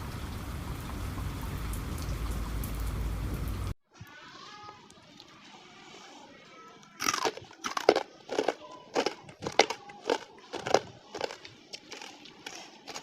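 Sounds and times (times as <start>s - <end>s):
crunchy chips being chewed: 7.0s - 13.0s.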